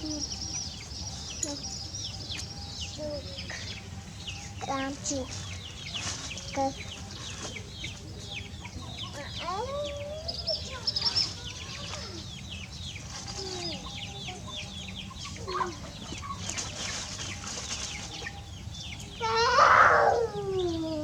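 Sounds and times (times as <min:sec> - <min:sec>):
birds chirping: 0:00.0 - 0:21.0
harsh bird call: 0:19.2 - 0:20.8.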